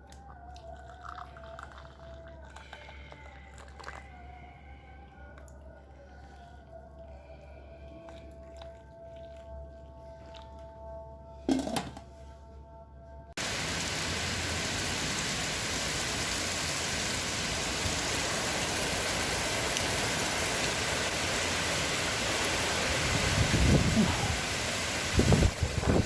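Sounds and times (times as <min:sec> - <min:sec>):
steady rain-like hiss: 0:13.4 - 0:26.0.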